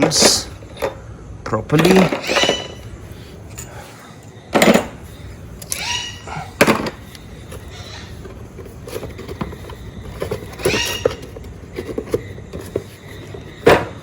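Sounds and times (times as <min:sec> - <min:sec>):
tools knocking and clinking: 0:00.2 - 0:02.9, 0:04.5 - 0:05.0.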